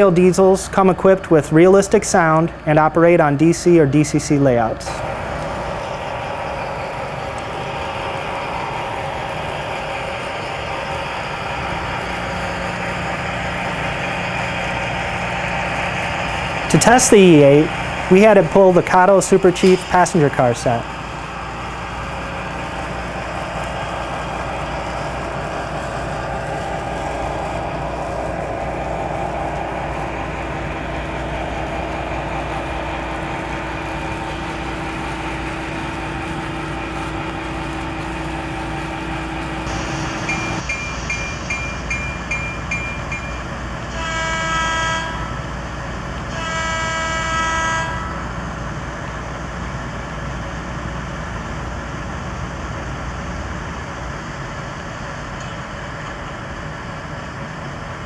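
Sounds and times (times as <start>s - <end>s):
model train diesel engine sound: 0.0s - 58.0s
bell ringing: 40.2s - 43.6s
train horn blasts: 43.9s - 45.5s, 46.3s - 48.4s.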